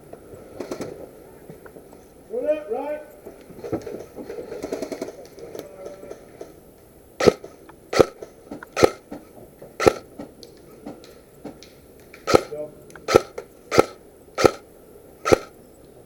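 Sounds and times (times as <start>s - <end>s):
sharp knocks: 7.2s - 9.2s, 9.8s - 11.6s, 12.3s - 14.6s, 15.3s - 15.5s.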